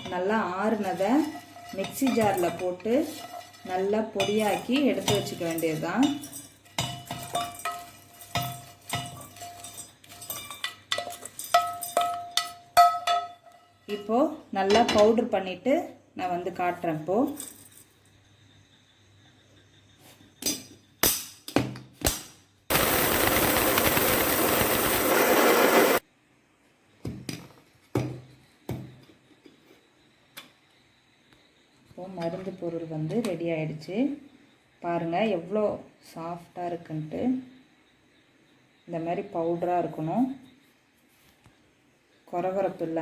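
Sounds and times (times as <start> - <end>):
spoon clinking on steel vessels: 0.8 - 13.5
mixer grinder grinding spices: 22.7 - 26.0.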